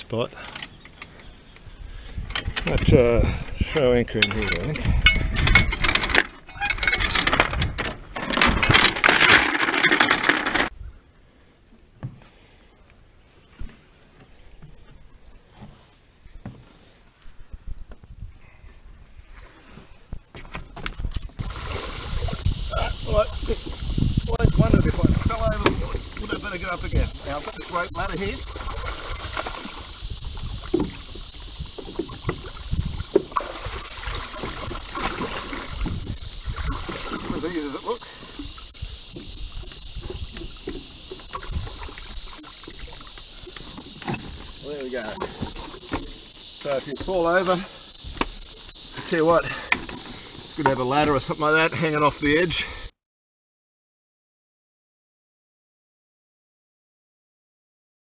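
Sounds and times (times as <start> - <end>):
anchor chain rattling against boat: 3.8 - 10.7
water sloshing: 21.4 - 50.9
insect chorus: 21.4 - 53.0.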